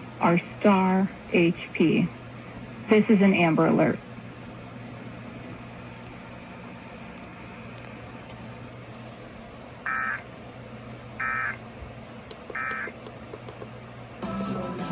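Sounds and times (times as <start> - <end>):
radio hum and hiss: 0.0 - 13.8
warbling two-tone data bursts: 9.9 - 10.2, 11.2 - 11.6.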